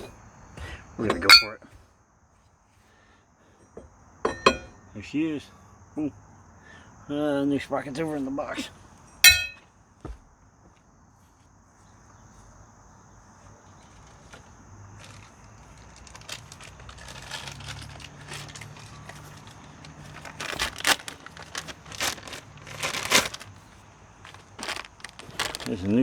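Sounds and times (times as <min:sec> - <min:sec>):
packaging crinkling and rustling: 0:13.7 - 0:26.0.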